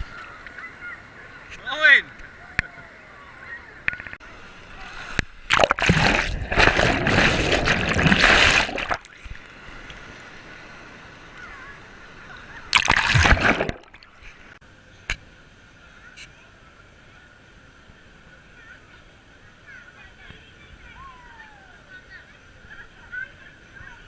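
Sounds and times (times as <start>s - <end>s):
water splashing: 3.8s - 14.6s.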